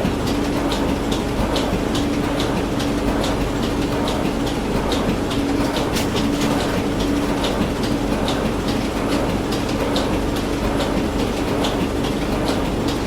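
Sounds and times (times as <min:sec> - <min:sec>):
printing machine humming and clicking: 0:00.0 - 0:13.0.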